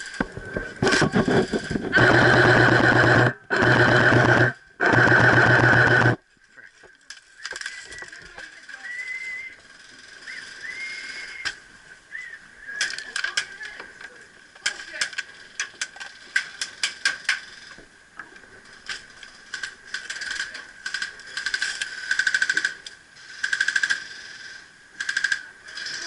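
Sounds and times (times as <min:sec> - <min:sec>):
sharp clicks: 0:00.1 - 0:06.2, 0:18.9 - 0:24.1, 0:25.0 - 0:25.9
airsoft gun firing full-auto bursts: 0:00.9 - 0:06.2
faint whistle-like tones: 0:07.2 - 0:13.2.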